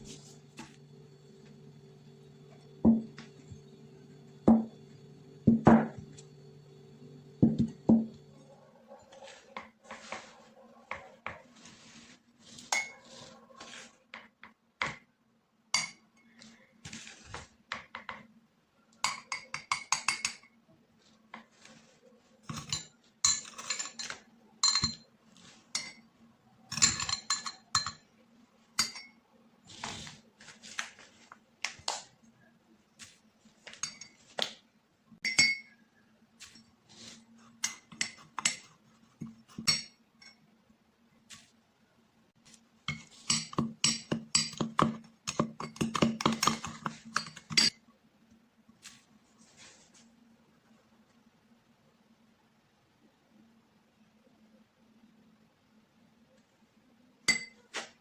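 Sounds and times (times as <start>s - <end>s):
spoon clinking against dish: 35.2s - 35.8s.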